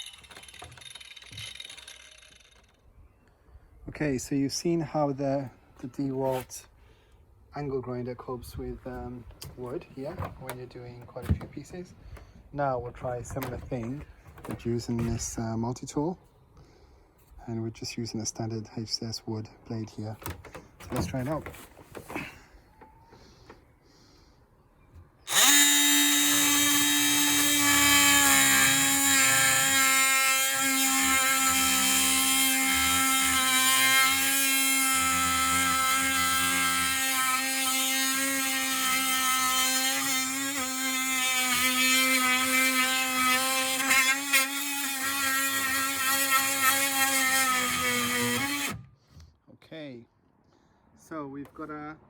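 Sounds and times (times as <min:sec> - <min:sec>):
oscillating tool cutting wood: 0:00.0 - 0:02.8, 0:25.3 - 0:48.8.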